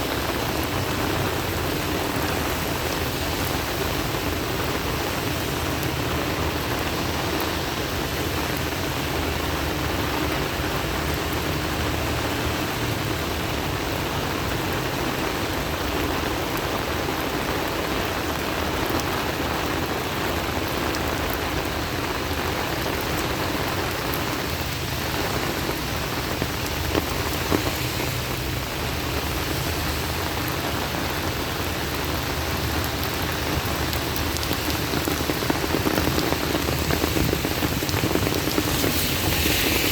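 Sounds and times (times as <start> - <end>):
heavy rain on hard surfaces: 0.0 - 39.9.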